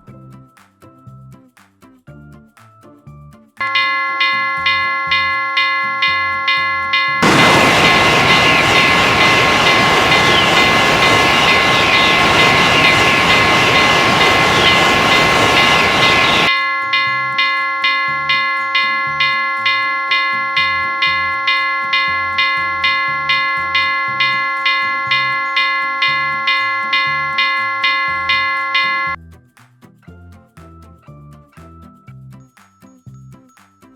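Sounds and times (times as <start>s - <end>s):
railroad crossing bell ringing: 3.6s - 29.2s
train rushing past: 3.6s - 29.2s.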